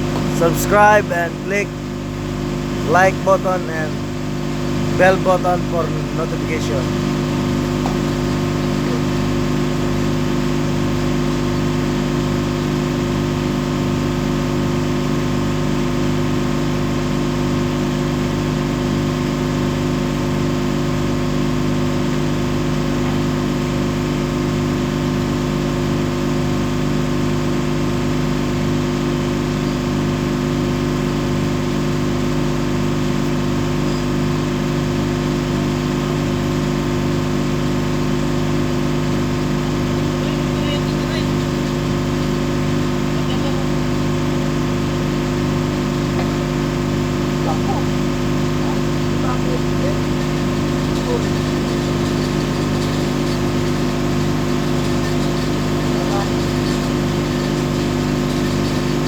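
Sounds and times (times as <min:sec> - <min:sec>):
ship engine hum pulsing: 0:00.0 - 0:10.2.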